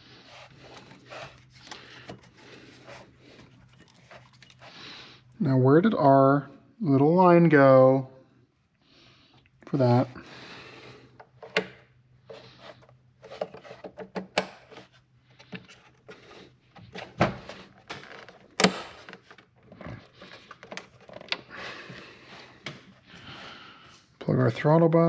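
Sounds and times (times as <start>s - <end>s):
hands handling engine parts: 0.2s - 4.8s, 11.1s - 23.1s.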